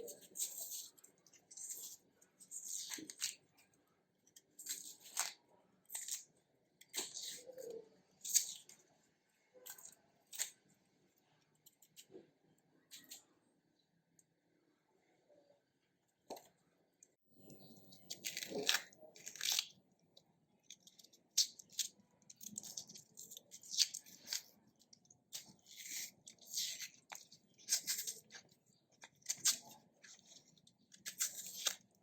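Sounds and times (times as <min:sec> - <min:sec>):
knife scraping raw root: 0:25.3 - 0:28.5, 0:29.2 - 0:31.9.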